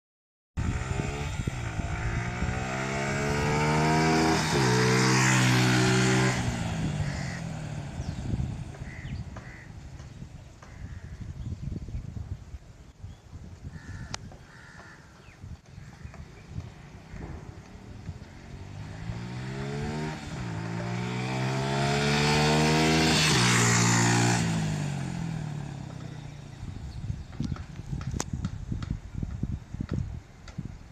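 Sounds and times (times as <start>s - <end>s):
motorcycle accelerating past: 0.6s - 9.7s, 17.0s - 26.9s.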